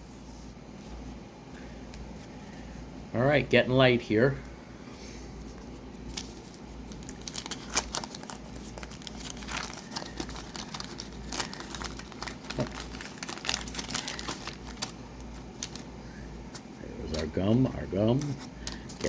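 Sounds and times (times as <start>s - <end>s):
wax-paper wrapper tearing and crinkling: 6.0s - 15.9s, 18.1s - 19.0s.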